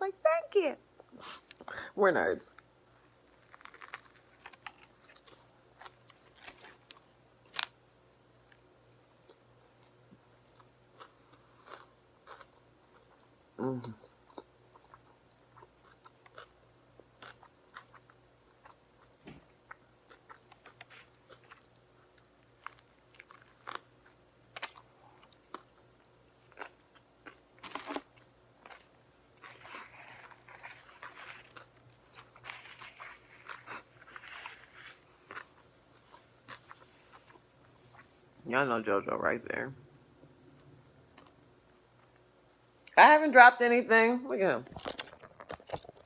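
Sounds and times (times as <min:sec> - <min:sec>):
chewing sandwich: 0:02.5 - 0:38.4, 0:44.7 - 0:46.0
wet mouth clicks and crunches: 0:44.8 - 0:46.0.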